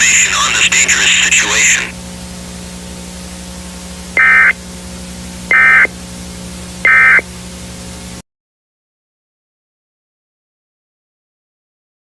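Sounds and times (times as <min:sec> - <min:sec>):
buzzy digital tone bursts: 0:00.0 - 0:02.0, 0:04.2 - 0:04.6, 0:05.5 - 0:05.9
low hum and hiss: 0:00.0 - 0:08.2.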